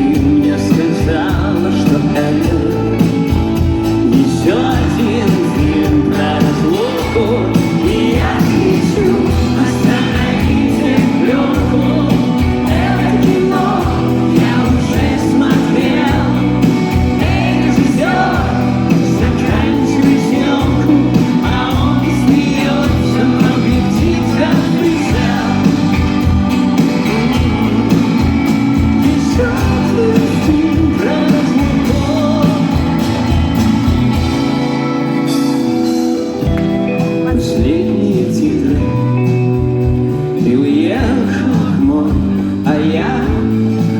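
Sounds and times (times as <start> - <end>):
person singing: 0.0 - 33.6, 34.2 - 43.9
live rock band playing: 0.0 - 43.9.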